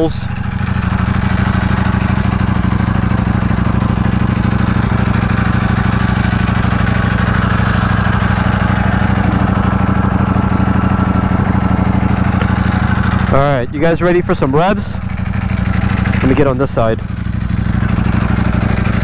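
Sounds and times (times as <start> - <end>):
motorcycle engine idling: 0.0 - 19.0.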